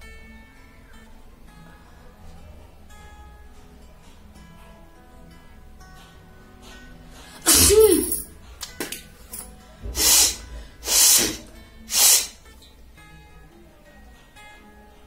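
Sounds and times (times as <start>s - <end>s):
soft acoustic guitar music: 0.0s - 15.0s
woman sneezing: 7.4s - 8.3s, 10.0s - 12.4s
breath bursts through nose: 9.9s - 12.4s.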